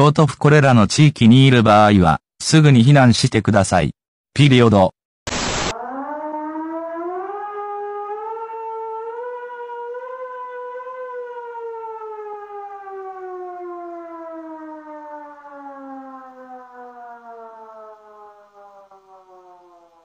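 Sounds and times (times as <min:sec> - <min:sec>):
civil defense siren winding down: 0:05.4 - 0:20.0.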